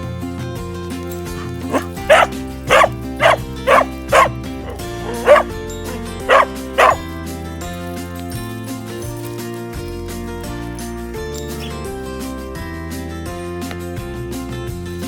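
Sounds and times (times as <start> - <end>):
background music: 0.0 - 15.0
dog barking: 1.3 - 7.1.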